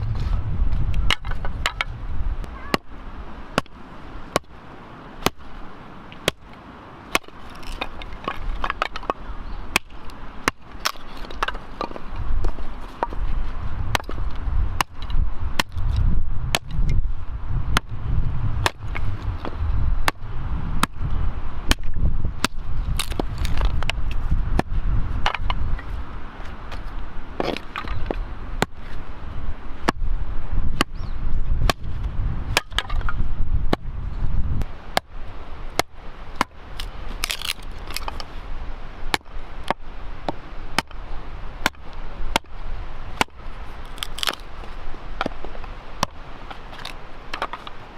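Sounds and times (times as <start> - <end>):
low rumbling noise: 0.0 - 47.9
axe chopping wood: 3.5 - 4.6, 5.2 - 5.5, 6.2 - 6.5, 7.1 - 13.2, 13.9 - 17.0, 17.7 - 18.0, 18.6 - 20.2, 20.8 - 21.0, 21.7 - 25.6, 27.4 - 28.8, 31.6 - 33.8, 34.9 - 38.3, 39.1 - 41.0, 41.6 - 44.4, 45.2 - 47.7.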